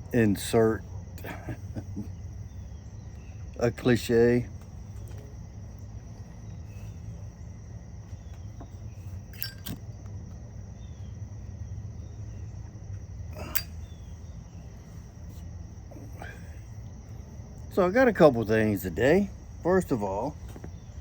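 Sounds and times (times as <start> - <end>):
faint chirps: 0.0 - 9.7, 10.7 - 17.9
steady low hum: 0.0 - 21.0.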